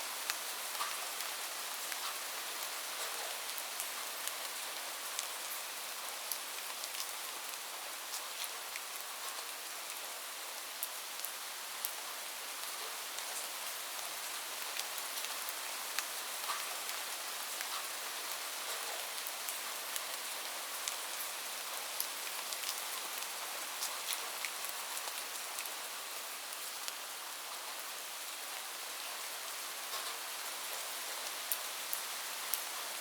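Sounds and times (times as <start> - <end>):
steady rain: 0.0 - 33.0
raindrops ticking on surface: 0.2 - 10.1, 10.7 - 12.0, 14.6 - 25.8, 29.8 - 33.0.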